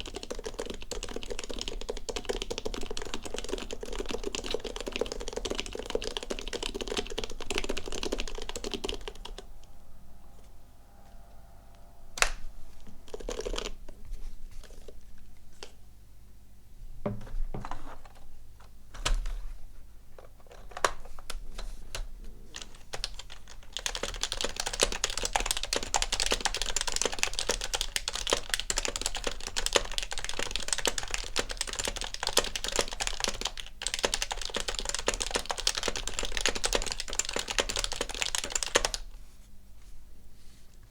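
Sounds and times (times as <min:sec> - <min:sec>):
keyboard typing: 0:00.0 - 0:09.7, 0:12.2 - 0:14.0, 0:20.5 - 0:39.0.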